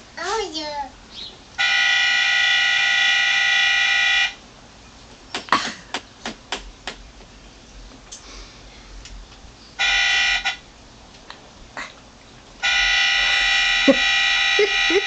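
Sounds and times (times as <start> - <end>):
buzzy horn blast: 1.6 - 4.4, 9.8 - 10.7, 12.6 - 15.0.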